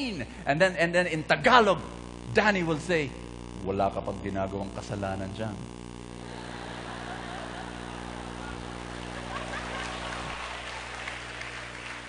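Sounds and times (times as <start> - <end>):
low hum: 1.3 - 11.7
audience laughing: 6.2 - 12.0.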